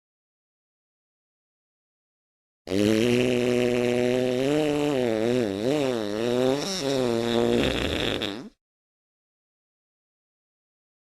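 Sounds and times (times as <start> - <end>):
fart sound effect: 2.7 - 8.6.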